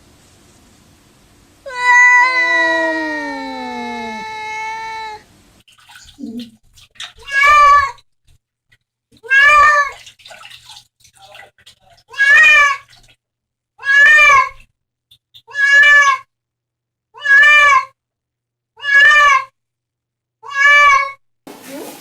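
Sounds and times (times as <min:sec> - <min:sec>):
cat meowing loudly: 0:01.7 - 0:05.2, 0:07.2 - 0:08.0, 0:09.2 - 0:10.0, 0:12.1 - 0:12.9, 0:13.8 - 0:14.6, 0:15.5 - 0:16.3, 0:17.2 - 0:18.0, 0:18.8 - 0:19.5, 0:20.4 - 0:21.2.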